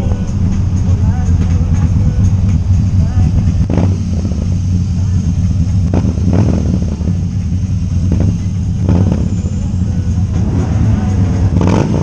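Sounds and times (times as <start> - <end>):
road vehicle rumble: 0.0 - 12.0.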